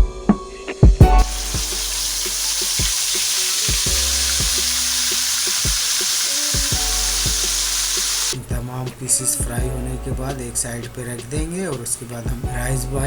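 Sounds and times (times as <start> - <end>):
chicken sizzling in hot oil: 1.2 - 9.1.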